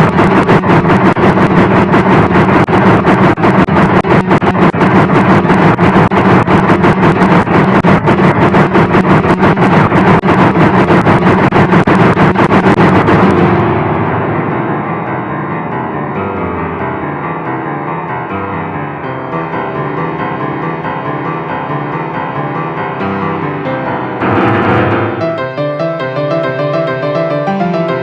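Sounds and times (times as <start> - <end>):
piano-like keyboard notes: 13.4 - 28.0
dark ringtone music: 24.2 - 28.0.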